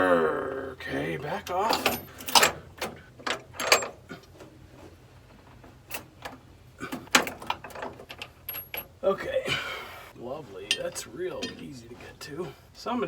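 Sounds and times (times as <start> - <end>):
knocks and clicks of hand work on metal: 5.6 - 8.9.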